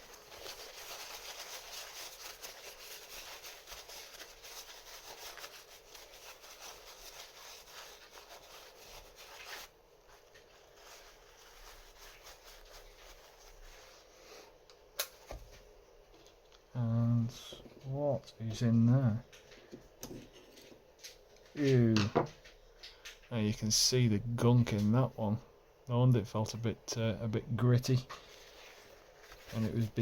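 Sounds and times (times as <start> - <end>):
paper towel rubbing metal part: 0.0 - 14.2, 28.2 - 30.0.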